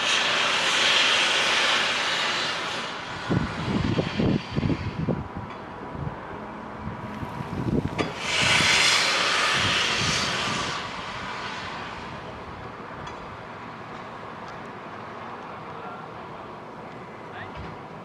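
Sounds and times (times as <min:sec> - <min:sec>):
loud hiss of steam: 0:00.0 - 0:14.4
steam locomotive exhaust beats: 0:00.0 - 0:18.0.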